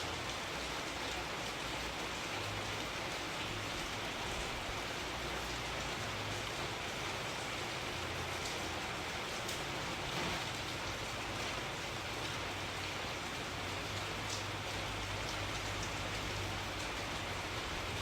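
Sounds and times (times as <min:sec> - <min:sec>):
steady rain hiss: 0:00.0 - 0:18.0
raindrop ticks: 0:07.2 - 0:18.0.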